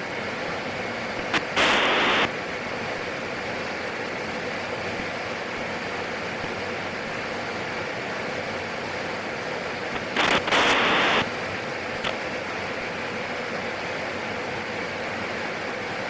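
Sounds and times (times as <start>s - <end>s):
radio static burst: 1.2s - 2.3s, 9.9s - 11.3s
aircraft cockpit hiss: 1.2s - 3.1s, 9.7s - 13.9s.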